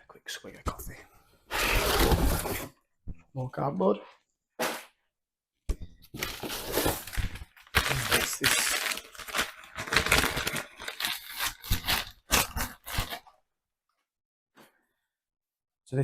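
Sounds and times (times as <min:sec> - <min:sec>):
cardboard crinkling and scraping: 0:01.6 - 0:02.7, 0:06.1 - 0:13.3.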